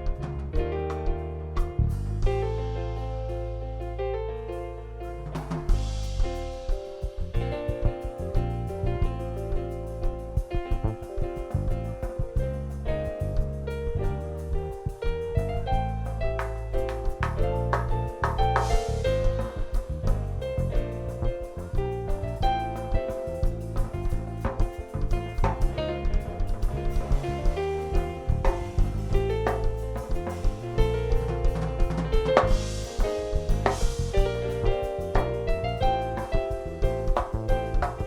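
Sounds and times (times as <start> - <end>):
bass line: 0.0 - 38.0
keyboard chords: 0.0 - 38.0
drums steady beat: 5.3 - 38.0.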